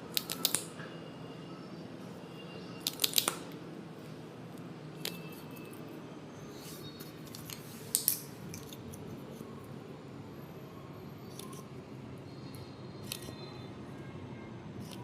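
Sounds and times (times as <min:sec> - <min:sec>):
slime clicking and crackling: 0:00.1 - 0:00.7.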